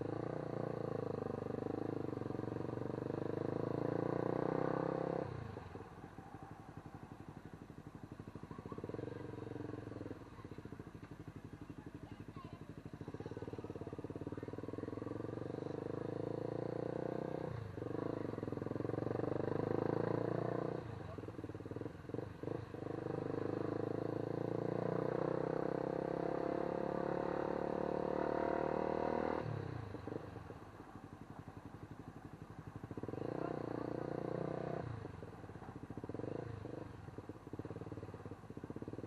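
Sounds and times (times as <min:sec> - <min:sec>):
vehicle engine running: 0:05.4 - 0:16.8.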